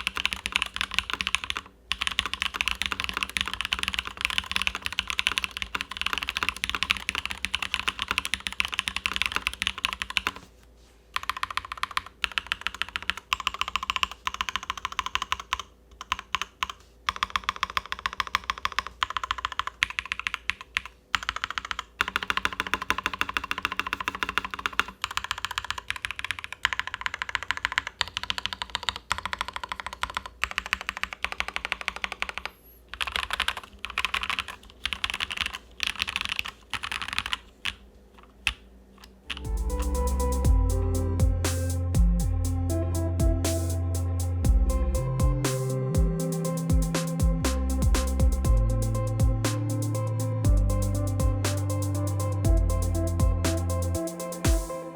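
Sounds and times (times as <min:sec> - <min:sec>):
mechanical keyboard typing: 0:00.0 - 0:10.4, 0:11.2 - 0:37.8, 0:39.3 - 0:40.4.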